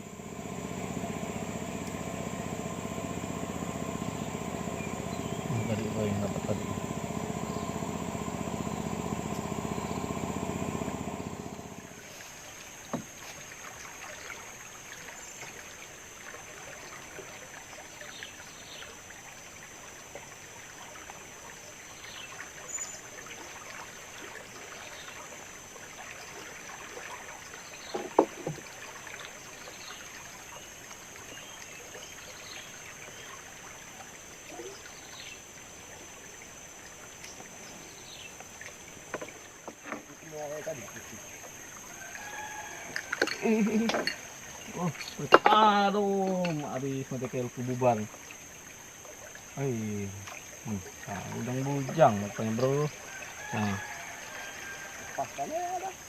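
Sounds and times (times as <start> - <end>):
steady low hum: 0.0 - 17.0
high insect drone: 0.0 - 56.0
water trickling: 0.0 - 56.0
faint chirps: 0.2 - 13.3, 34.4 - 35.5.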